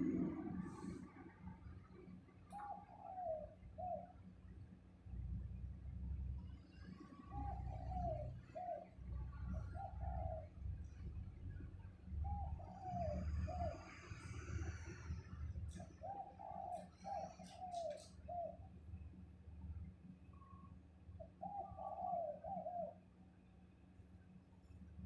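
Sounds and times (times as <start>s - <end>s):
steady low rumble: 0.0s - 2.6s, 3.5s - 16.2s
pigeon cooing: 2.6s - 4.2s, 7.3s - 10.8s, 12.2s - 18.6s, 21.3s - 23.0s.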